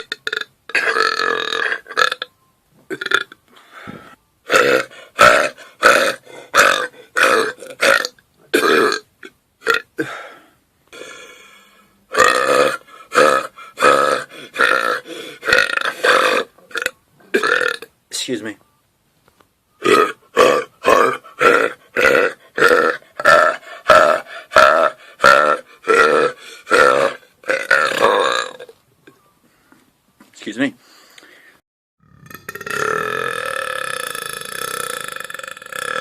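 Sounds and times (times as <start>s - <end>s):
man belching: 0.0s - 2.3s, 2.9s - 3.4s, 4.5s - 10.2s, 12.1s - 17.9s, 19.8s - 28.7s, 32.0s - 36.0s.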